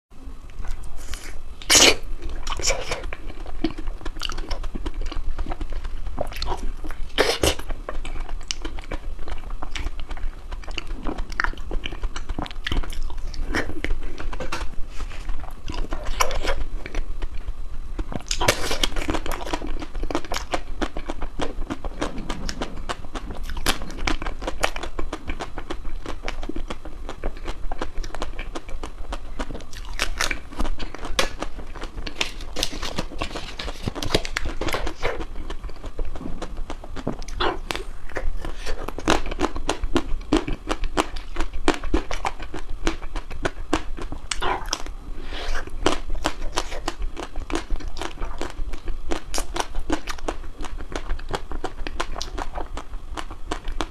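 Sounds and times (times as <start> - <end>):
crunchy food being chewed: 0.5 - 53.9.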